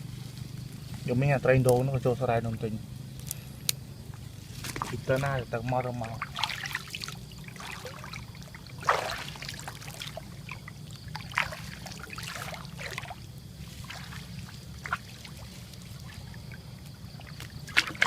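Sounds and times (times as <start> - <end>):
low hum: 0.0 - 18.0
water splashing and trickling: 4.4 - 18.0.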